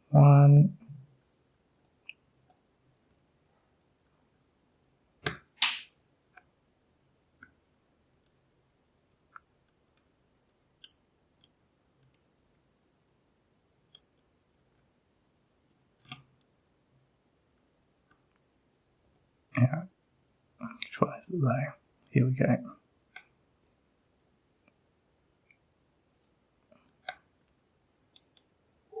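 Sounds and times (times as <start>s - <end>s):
lock pick clicking on pins: 5.2s - 5.7s, 10.8s - 12.3s, 13.9s - 14.3s, 16.0s - 16.5s, 23.1s - 23.8s, 26.2s - 27.3s, 28.1s - 28.5s.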